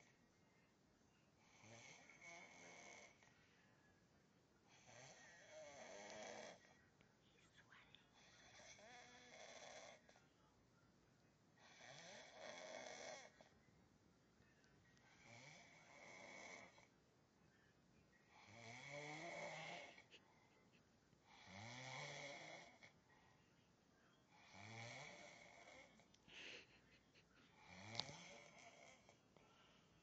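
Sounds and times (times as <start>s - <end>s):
man snoring: 1.5s - 3.2s, 4.7s - 6.7s, 8.4s - 10.0s, 11.6s - 13.5s, 15.2s - 16.8s, 18.3s - 20.1s, 21.3s - 22.9s, 24.4s - 26.0s, 27.6s - 29.1s.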